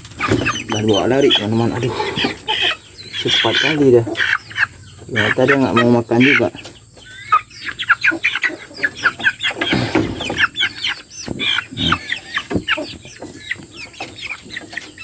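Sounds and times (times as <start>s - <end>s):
chickens clucking: 0.0s - 15.0s.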